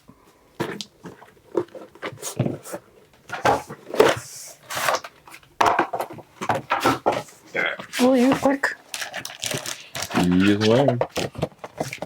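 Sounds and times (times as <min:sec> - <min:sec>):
plastic wrap crinkling and tearing: 0:07.9 - 0:12.0.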